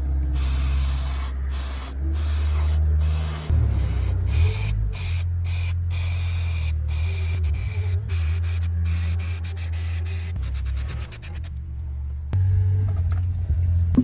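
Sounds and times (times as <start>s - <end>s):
machinery low drone: 0.0s - 9.1s
loud hiss: 0.4s - 11.4s.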